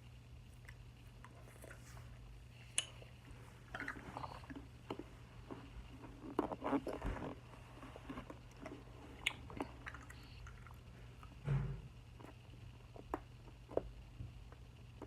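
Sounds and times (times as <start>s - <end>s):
soft wet clicks and squishes: 0.6s - 11.4s.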